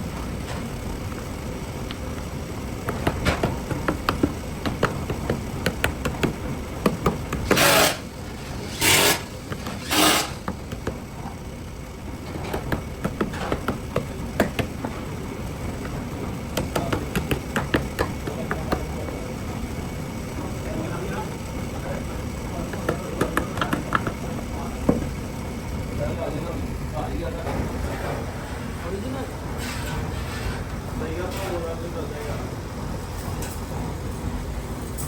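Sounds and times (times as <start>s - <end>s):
tools tapping on metal: 2.8s - 7.8s, 12.3s - 14.9s, 15.8s - 19.2s.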